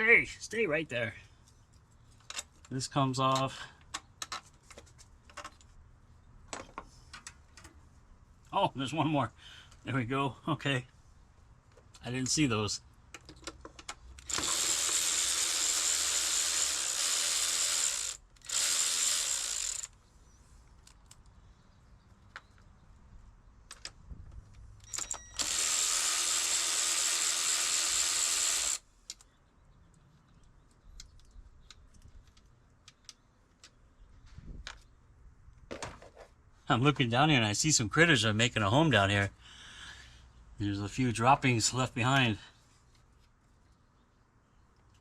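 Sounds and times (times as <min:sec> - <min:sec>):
tools and parts clicking: 0:01.7 - 0:02.7, 0:13.1 - 0:15.2, 0:23.7 - 0:25.8
ratchet clicking rapidly: 0:14.2 - 0:20.0, 0:25.4 - 0:28.8.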